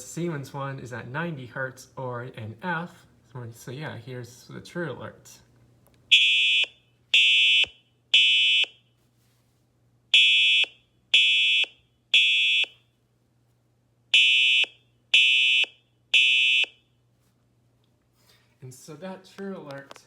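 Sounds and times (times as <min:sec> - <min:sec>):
fire alarm horn blasts: 0:06.1 - 0:08.9, 0:10.1 - 0:12.8, 0:14.1 - 0:16.9.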